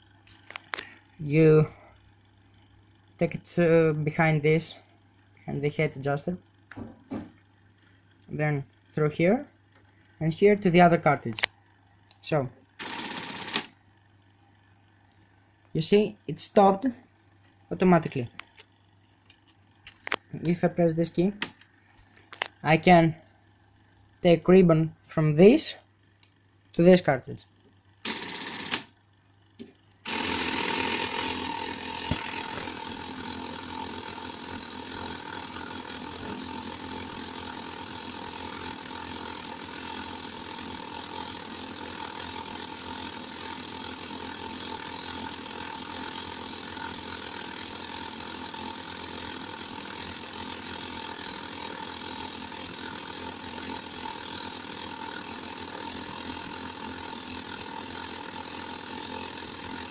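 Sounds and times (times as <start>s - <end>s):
typewriter ribbon feed ratcheting: 12.8s - 13.7s, 28.0s - 28.9s, 30.0s - 59.9s
electric typewriter hum: 12.8s - 13.8s, 28.0s - 29.0s.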